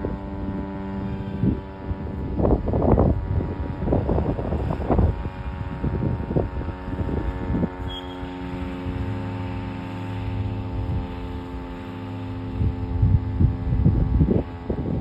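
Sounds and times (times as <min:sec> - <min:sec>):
warning siren steady tone: 0:00.0 - 0:15.0
wind gusts on microphone: 0:00.0 - 0:15.0.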